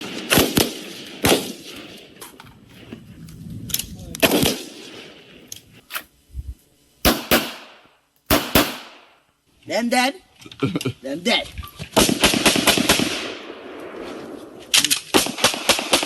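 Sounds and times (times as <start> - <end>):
gunshots: 0.0 - 2.0, 4.2 - 5.2, 7.0 - 9.2, 12.0 - 16.0.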